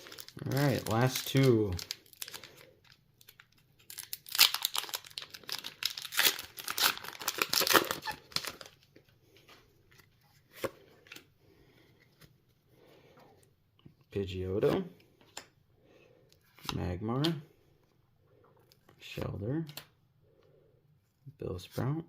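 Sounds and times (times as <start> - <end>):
foil wrapper tearing and crinkling: 0.0 - 2.5, 3.2 - 8.8.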